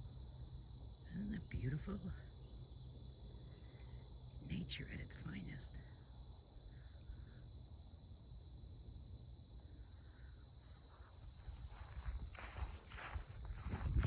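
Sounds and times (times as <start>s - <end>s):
crickets chirping: 0.0s - 14.0s
footsteps crunching on trail: 10.6s - 14.0s.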